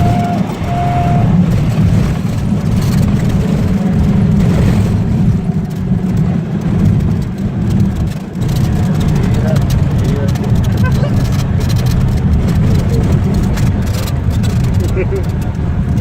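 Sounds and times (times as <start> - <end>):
short high tone: 0.0 - 1.4
piston aircraft engine and propeller: 0.0 - 16.0.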